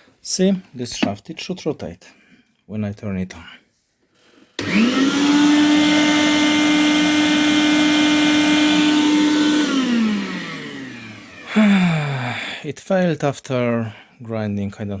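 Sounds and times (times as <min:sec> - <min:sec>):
meat grinder motor whining: 0:04.6 - 0:12.2.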